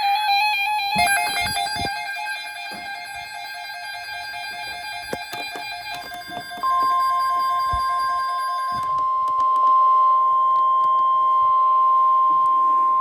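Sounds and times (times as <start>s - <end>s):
steady alarm tone: 1.0s - 10.6s.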